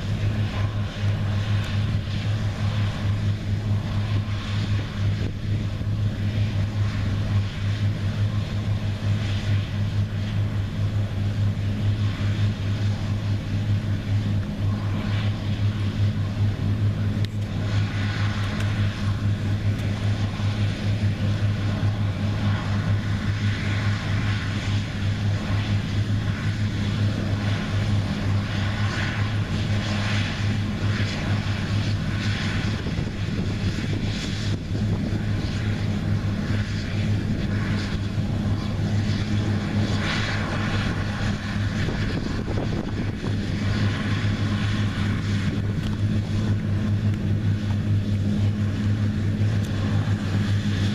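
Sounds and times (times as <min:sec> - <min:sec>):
combine engine hum: 0:00.0 - 0:50.9.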